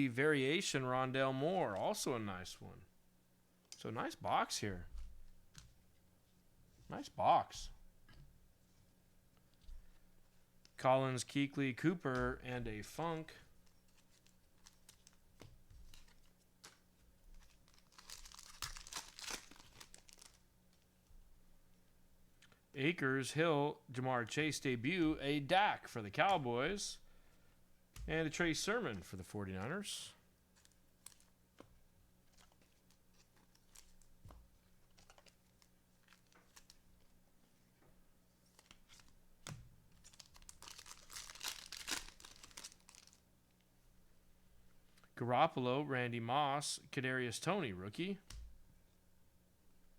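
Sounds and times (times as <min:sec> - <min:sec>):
cards rustling and clicking: 0:13.6 - 0:20.4, 0:30.6 - 0:37.1, 0:38.4 - 0:43.2
foil wrapper tearing and crinkling: 0:17.4 - 0:20.4, 0:40.0 - 0:43.2.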